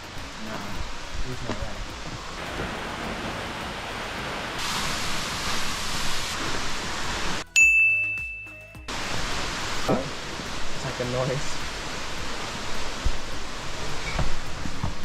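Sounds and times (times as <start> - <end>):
waterfall rushing: 0.0 - 7.4, 8.9 - 15.0
ringing ding: 7.5 - 8.9.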